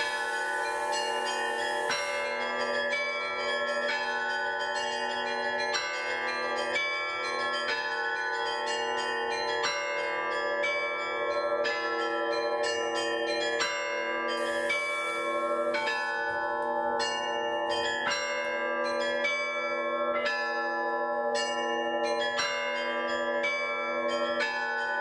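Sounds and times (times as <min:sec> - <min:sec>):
small bells struck quickly: 0:00.0 - 0:05.2
hum of large bells: 0:00.0 - 0:25.0.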